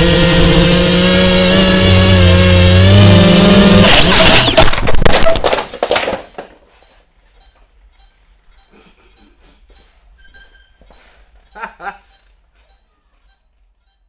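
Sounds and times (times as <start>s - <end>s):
drone propellers whining: 0.0s - 4.7s
drone crashing clatter: 3.4s - 5.6s.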